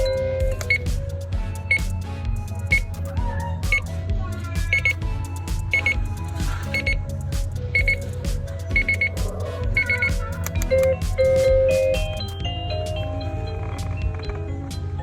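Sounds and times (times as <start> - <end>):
simple electronic melody: 0.0 - 15.0
short high electronic beeps: 7.7 - 8.0.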